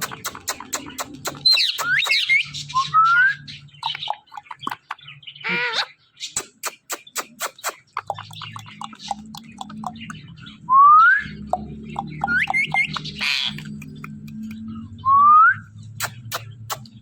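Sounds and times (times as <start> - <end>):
parrot chirping: 0.0 - 10.4, 11.2 - 14.6
parrot warbling call: 5.4 - 6.0.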